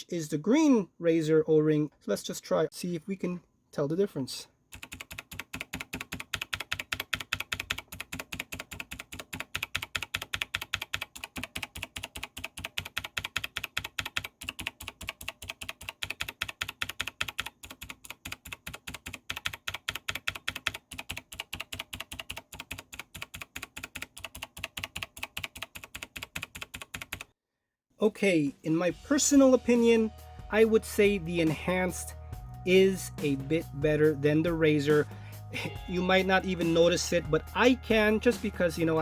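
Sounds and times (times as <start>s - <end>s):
mechanical keyboard keys clicking: 4.8s - 27.3s.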